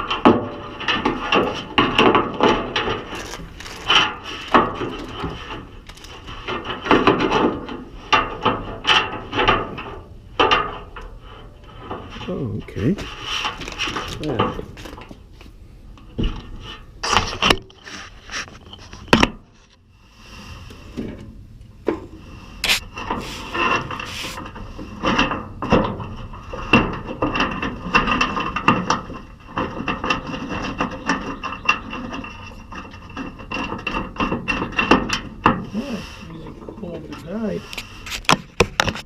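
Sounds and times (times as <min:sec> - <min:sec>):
metal clicks and knocks: 0:00.0 - 0:15.2, 0:23.0 - 0:35.7
metal parts scraping and rubbing: 0:00.7 - 0:09.5, 0:13.0 - 0:15.1, 0:16.5 - 0:19.8, 0:22.6 - 0:25.2.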